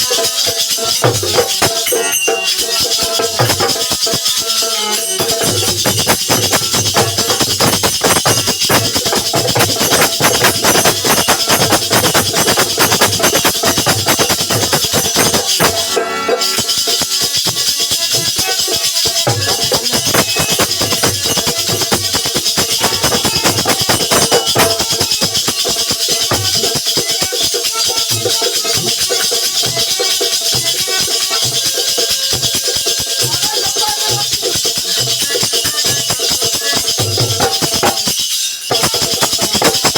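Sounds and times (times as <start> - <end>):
drums played fast: 0.0 - 39.9
jingling metal percussion: 0.0 - 39.9.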